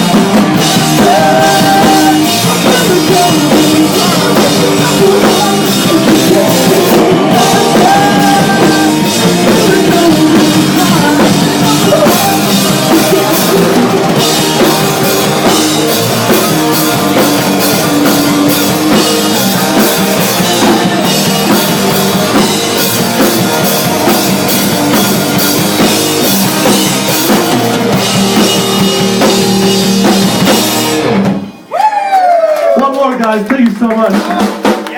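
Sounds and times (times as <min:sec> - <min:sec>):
drum kit steady beat: 0:00.0 - 0:31.8, 0:33.0 - 0:34.9
punk rock band playing live: 0:00.0 - 0:32.0, 0:32.6 - 0:34.9.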